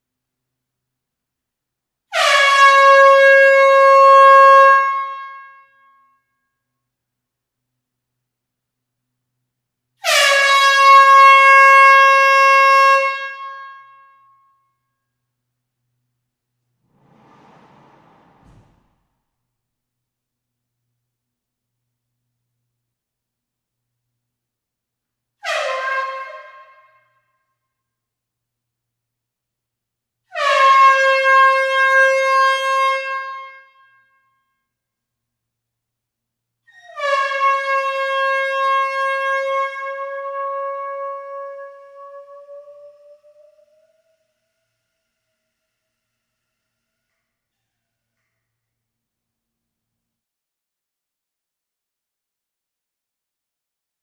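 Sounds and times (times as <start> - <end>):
air horn blast in a hall: 2.1 - 6.0, 10.0 - 14.2, 16.8 - 19.2, 25.4 - 27.3, 30.3 - 34.1, 37.0 - 48.1
air horn blast: 10.0 - 14.0, 16.8 - 19.2.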